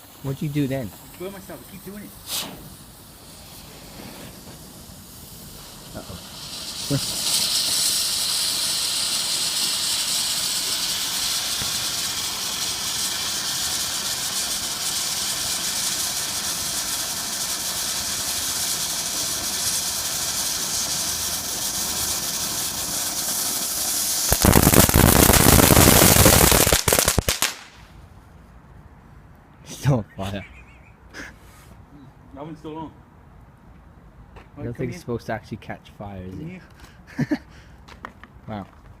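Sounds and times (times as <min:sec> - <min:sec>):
firework fountain hissing: 0:00.0 - 0:27.8
firework crackling burst: 0:00.0 - 0:27.9.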